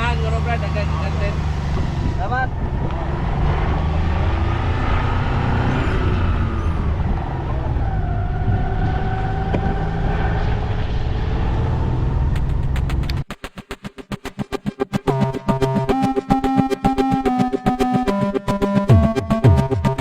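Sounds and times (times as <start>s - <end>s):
engine whine: 0.0s - 13.3s.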